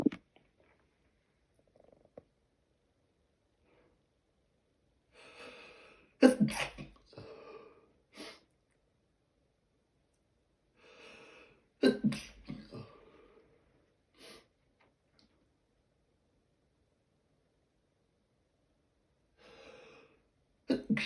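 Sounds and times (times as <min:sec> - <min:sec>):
person sneezing: 0:06.2 - 0:07.0, 0:11.8 - 0:12.9, 0:20.7 - 0:21.0.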